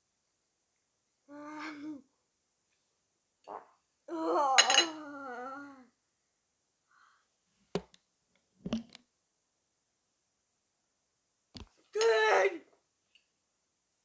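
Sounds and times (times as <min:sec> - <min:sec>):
person's wavering vocal sound: 0:03.5 - 0:06.0.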